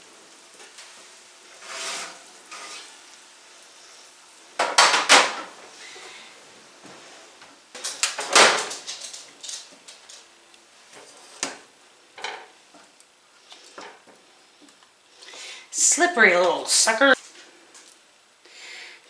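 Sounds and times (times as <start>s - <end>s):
chicken sizzling under broiler: 0.0s - 19.0s
metal pans and utensils clattering: 0.6s - 3.1s, 4.6s - 6.2s, 7.8s - 10.3s, 10.9s - 12.6s.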